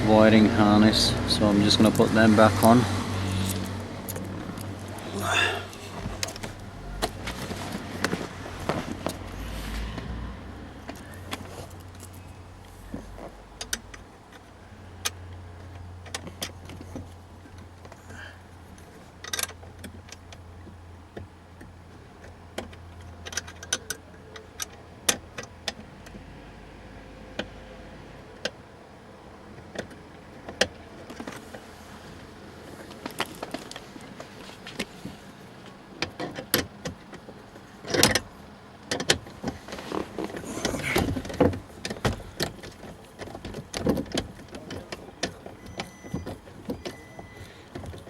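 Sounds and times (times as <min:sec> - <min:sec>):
clicks and rattles of fasteners: 0:01.8 - 0:09.4, 0:10.8 - 0:18.2, 0:18.8 - 0:26.1, 0:32.8 - 0:48.0.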